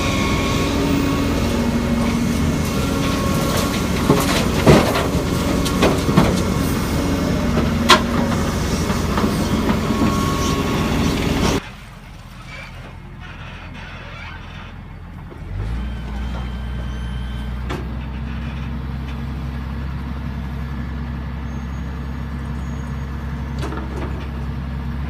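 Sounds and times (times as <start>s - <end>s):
heavy machinery running: 0.0s - 13.8s.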